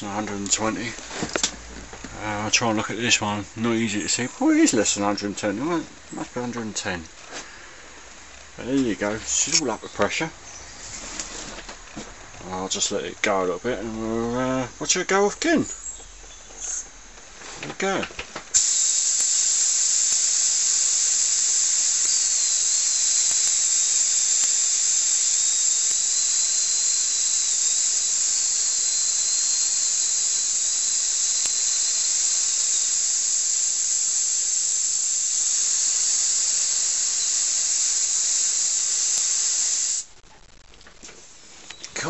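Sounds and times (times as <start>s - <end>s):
compressed air hissing: 7.2s - 40.2s.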